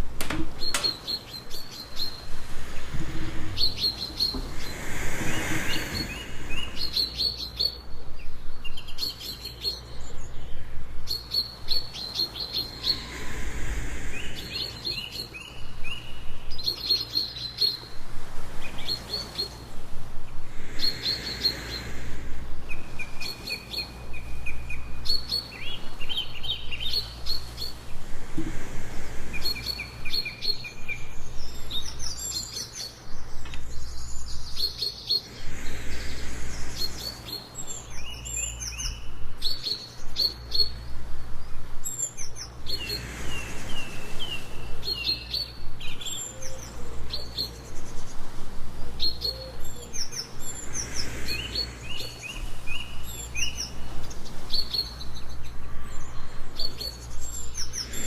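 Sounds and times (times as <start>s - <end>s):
songbirds chirping and trilling: 0.0s - 58.0s
soft breath sound: 1.8s - 8.5s, 9.7s - 32.5s, 33.2s - 39.8s, 40.9s - 58.0s
steady low rumble: 2.1s - 7.2s, 12.6s - 16.6s, 26.4s - 32.0s, 35.2s - 39.4s.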